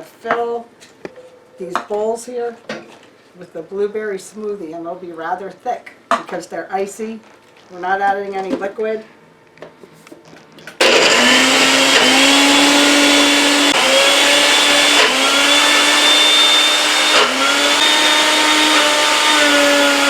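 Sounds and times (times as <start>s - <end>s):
blender motor running: 10.8s - 20.0s.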